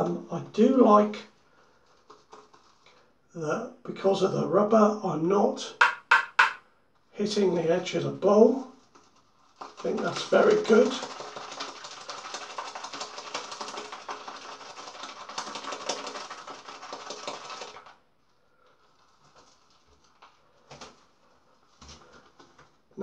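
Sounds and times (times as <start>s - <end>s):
shaving brush lathering in bowl: 8.0s - 18.0s.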